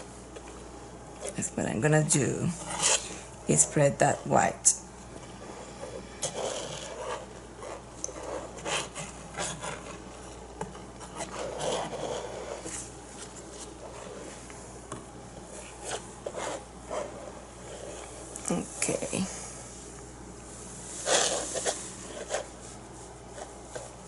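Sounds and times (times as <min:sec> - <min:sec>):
tool scraping paint on canvas: 0:05.5 - 0:14.4.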